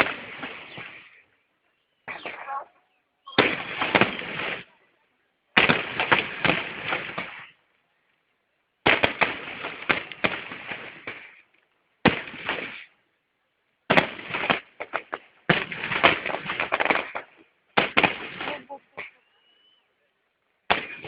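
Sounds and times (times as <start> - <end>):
fireworks bangs and crackles: 0.0 - 1.2, 3.3 - 4.8, 5.6 - 7.6, 8.8 - 11.4, 12.0 - 12.9, 13.9 - 19.2.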